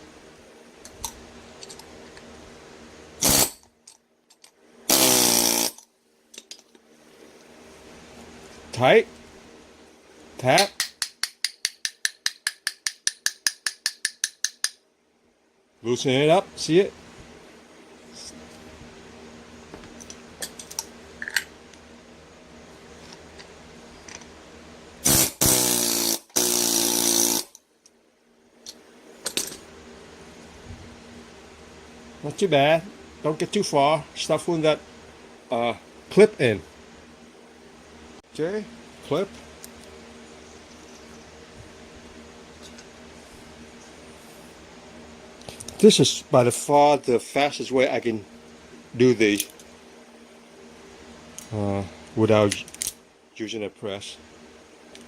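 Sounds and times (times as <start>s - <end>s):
small motor running: 4.9s - 5.8s, 25.0s - 27.6s
hand tool tapping: 10.6s - 14.8s.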